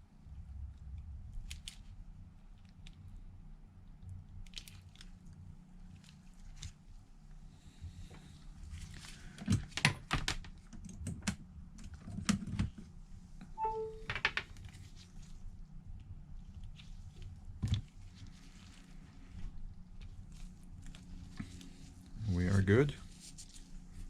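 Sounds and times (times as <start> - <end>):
short beep: 13.6 - 14.1.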